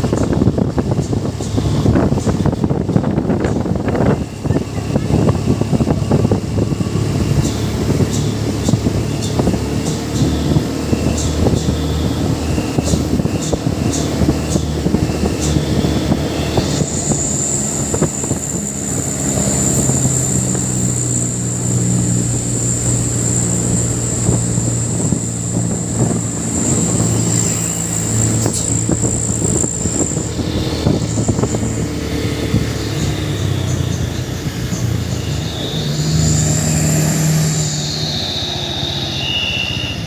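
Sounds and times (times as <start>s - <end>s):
truck diesel engine running: 0.0s - 40.0s
thin high whistle: 35.1s - 40.0s.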